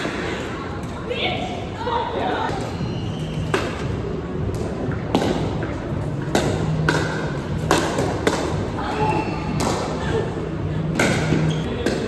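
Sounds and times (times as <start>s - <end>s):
ball bouncing on court: 6.3s - 9.9s, 11.0s - 12.0s.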